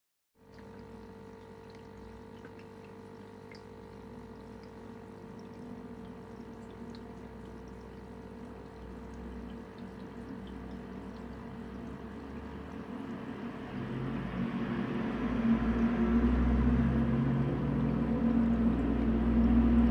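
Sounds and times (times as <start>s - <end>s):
aquarium pump humming: 0.4s - 19.9s
water trickling: 0.4s - 19.9s
bubbles popping: 0.6s - 14.4s.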